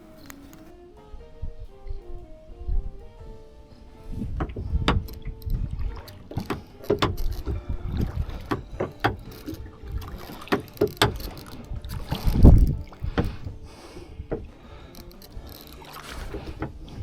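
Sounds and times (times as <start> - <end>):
knocks and clunks on boat: 4.0 - 17.0.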